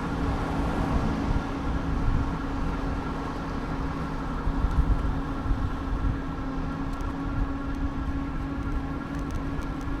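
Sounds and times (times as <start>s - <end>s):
bicycle road vibration: 1.6s - 10.0s
faint light ticks: 6.9s - 10.0s.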